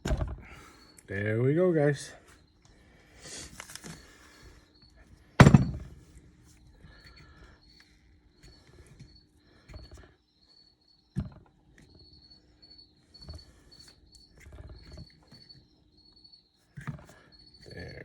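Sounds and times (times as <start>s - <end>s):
crickets chirping: 0.4s - 18.0s
metal parts tapping and scraping: 3.4s - 4.1s.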